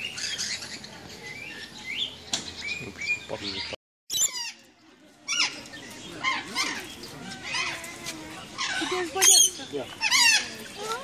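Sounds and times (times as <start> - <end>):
parrots chirping: 6.2 - 11.0.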